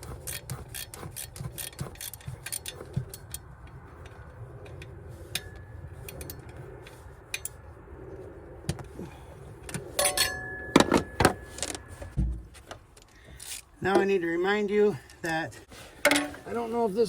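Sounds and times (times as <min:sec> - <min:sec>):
metal hand tools clinking: 0:10.0 - 0:10.7.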